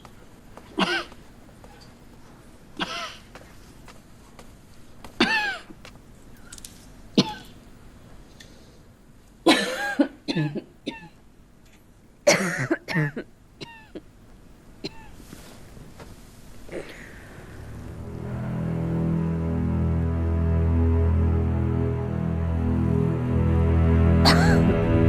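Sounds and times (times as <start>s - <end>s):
woman coughing harshly: 5.2s - 5.7s, 9.5s - 11.2s, 12.3s - 14.0s, 14.8s - 15.2s, 24.2s - 24.7s.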